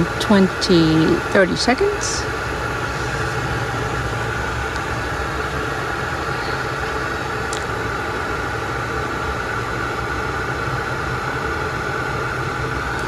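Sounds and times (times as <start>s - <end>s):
mechanical hum and hiss: 0.0s - 13.0s.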